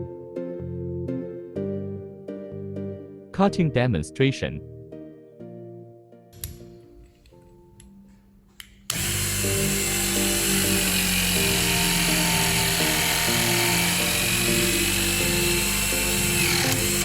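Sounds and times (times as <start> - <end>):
background music: 0.0 - 17.0
electric pump motor running: 8.9 - 17.0.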